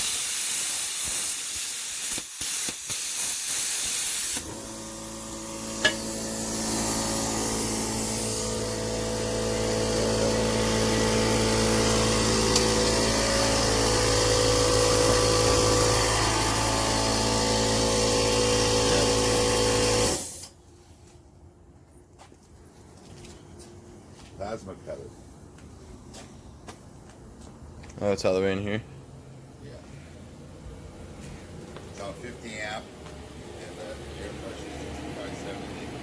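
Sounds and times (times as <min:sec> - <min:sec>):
plasma cutter humming: 0:00.0 - 0:20.5
air hissing: 0:00.0 - 0:20.6.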